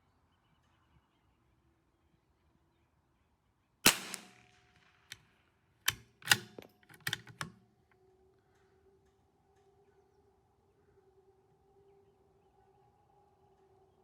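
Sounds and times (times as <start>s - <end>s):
rifle bolt clicking: 3.9s - 4.4s, 5.9s - 7.6s
rifle shot: 3.9s - 5.2s.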